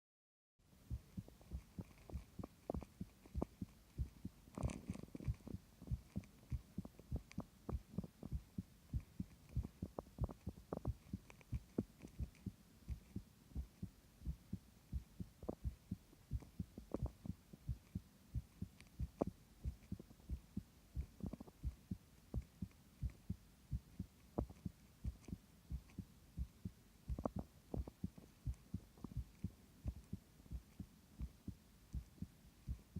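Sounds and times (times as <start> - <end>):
heartbeat thumps: 0.8 - 32.9.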